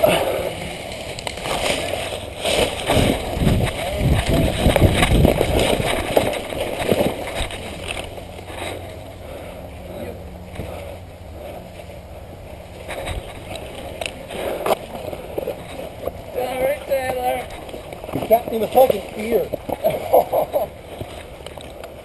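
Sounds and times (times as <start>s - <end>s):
gear rustling: 0.0s - 9.2s
microphone jostling: 1.4s - 8.3s.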